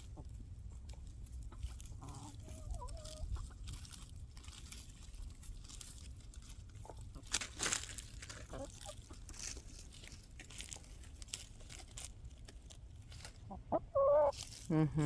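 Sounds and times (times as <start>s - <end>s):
hens clucking: 0.0s - 4.0s, 8.2s - 9.5s, 13.2s - 14.4s
crunching footsteps: 0.2s - 13.5s, 14.3s - 15.0s.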